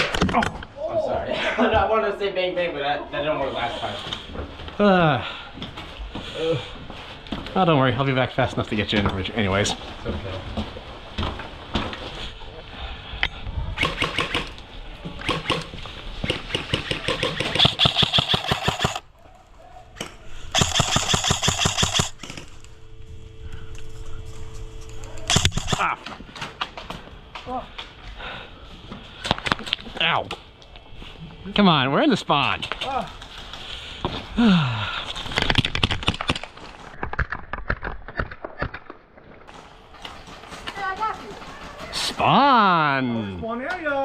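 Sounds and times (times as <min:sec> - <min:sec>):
airsoft gun full auto bursts: 0:13.8 - 0:14.6, 0:15.2 - 0:19.1, 0:20.5 - 0:22.4, 0:25.3 - 0:25.9
faint steady hum: 0:18.5 - 0:35.3.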